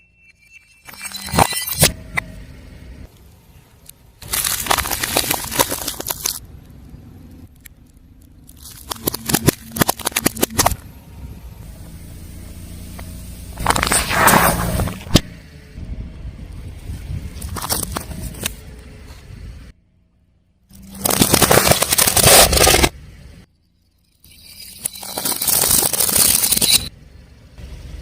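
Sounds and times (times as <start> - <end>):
car tyre crushing brittle objects: 3.0 - 11.9, 12.9 - 15.3, 17.4 - 18.6, 20.7 - 23.0, 23.7 - 27.0.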